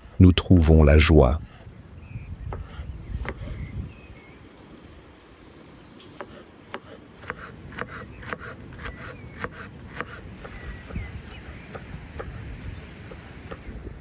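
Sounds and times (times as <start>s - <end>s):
knife chopping on wooden board: 2.5s - 3.5s, 6.1s - 13.8s.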